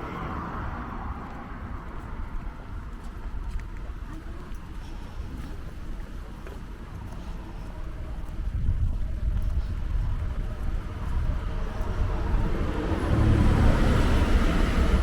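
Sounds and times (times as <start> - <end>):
car driving past: 11.5 - 15.0.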